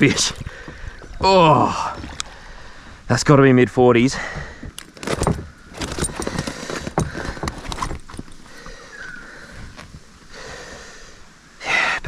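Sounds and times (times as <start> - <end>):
knocks and clatter on a kayak: 0.1 - 2.3, 4.2 - 8.8.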